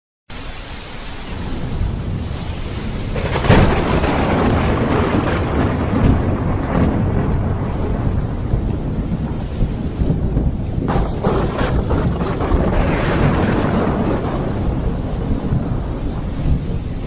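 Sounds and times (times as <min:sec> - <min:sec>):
rain hiss: 0:00.3 - 0:17.0
thunder cracking and rumbling: 0:01.4 - 0:17.0.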